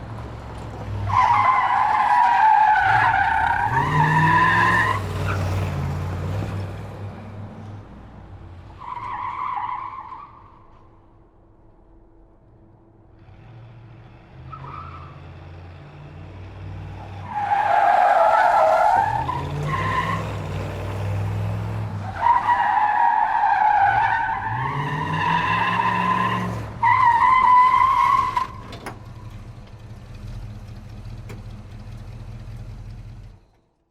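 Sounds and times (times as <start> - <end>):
car engine revving: 13.2 - 22.5.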